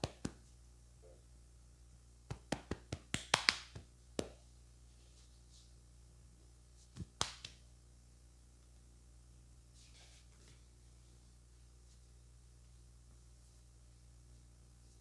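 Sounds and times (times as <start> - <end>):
hands slapping head: 0.0 - 0.4, 2.3 - 4.4, 6.9 - 7.6.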